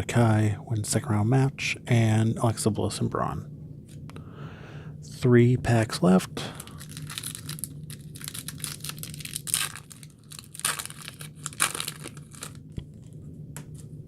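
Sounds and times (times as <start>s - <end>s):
wrapper tearing and crinkling: 6.6s - 12.8s.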